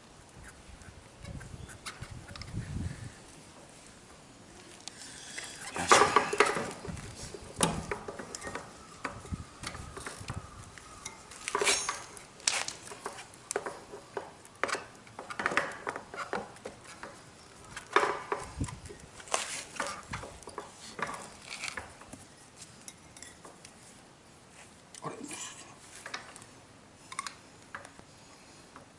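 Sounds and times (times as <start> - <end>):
metal parts clinking and scraping: 11.4 - 12.2.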